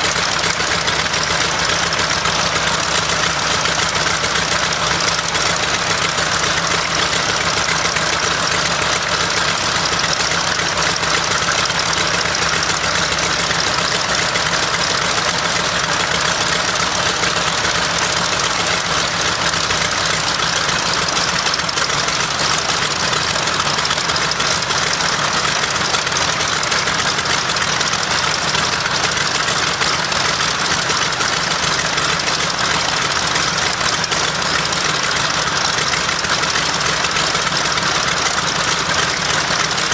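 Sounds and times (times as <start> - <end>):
radial aircraft engine running: 0.0 - 39.9.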